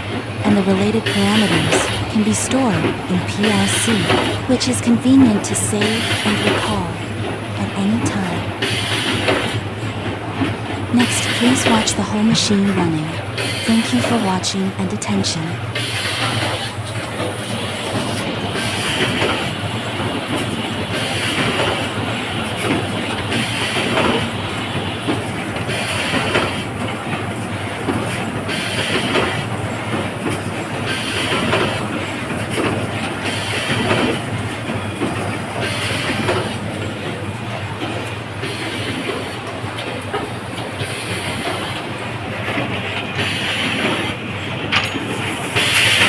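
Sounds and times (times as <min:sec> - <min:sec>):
steady machine hum: 0:00.0 - 0:20.9.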